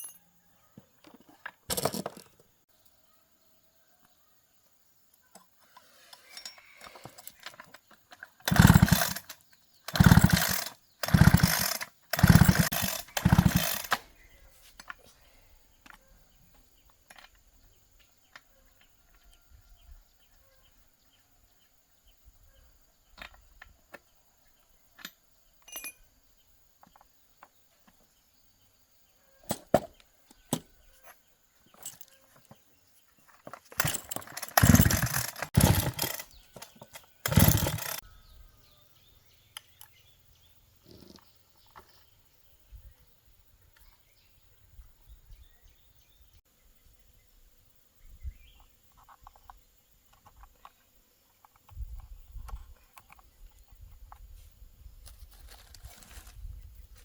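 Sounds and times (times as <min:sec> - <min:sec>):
hand tools clicking and knocking: 0:01.0 - 0:02.4, 0:06.1 - 0:14.0, 0:29.5 - 0:38.0.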